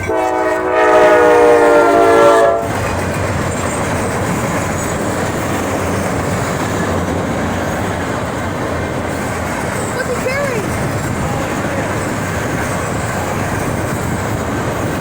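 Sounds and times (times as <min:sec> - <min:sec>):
locomotive horn: 0:00.0 - 0:02.8
rail cars rolling past: 0:00.0 - 0:15.0.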